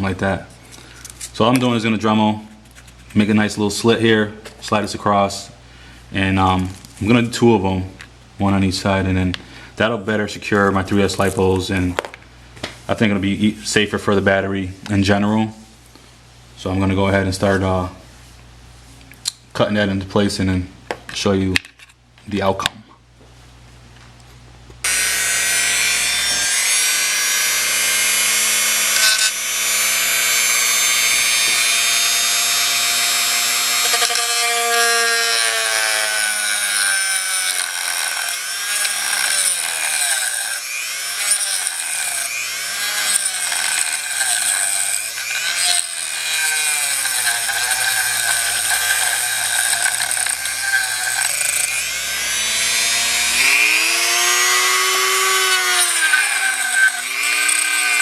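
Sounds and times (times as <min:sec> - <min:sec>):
rotary tool whining: 0:24.8 - 0:58.0.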